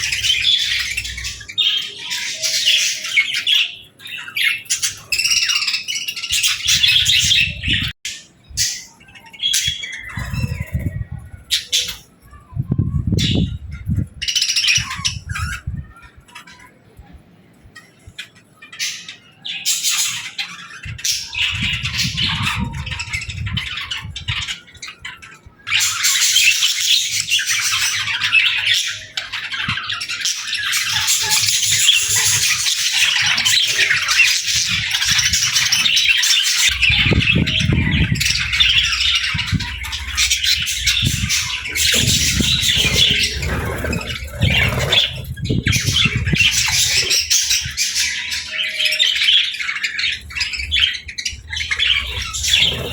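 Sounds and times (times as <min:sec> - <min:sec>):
budgerigars chattering: 0:18.2 - 0:52.9
low rumbling noise: 0:36.7 - 0:47.0.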